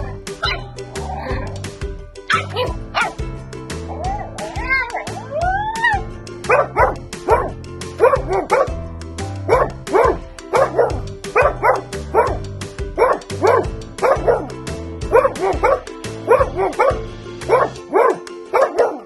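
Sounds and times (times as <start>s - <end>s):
background music: 0.0s - 19.0s
dog barking: 2.3s - 3.2s, 6.5s - 8.8s, 9.5s - 12.4s, 13.0s - 14.5s, 15.1s - 19.0s.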